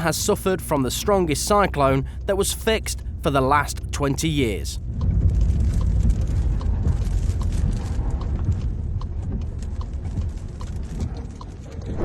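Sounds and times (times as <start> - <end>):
wind buffeting microphone: 11.8 - 12.0.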